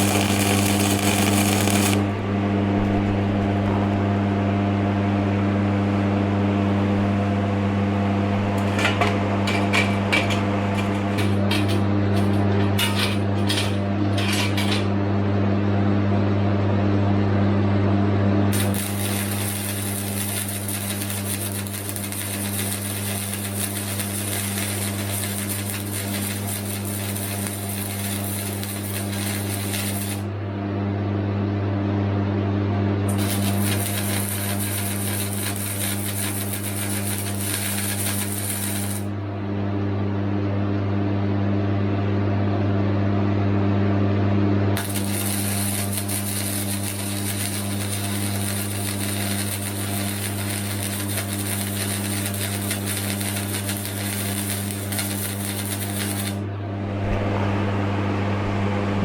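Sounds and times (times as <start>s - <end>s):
welding arc crackling: 0.0s - 11.5s, 18.5s - 30.3s, 33.1s - 39.1s, 44.8s - 59.0s
low steady hum: 0.0s - 15.3s, 56.4s - 59.0s.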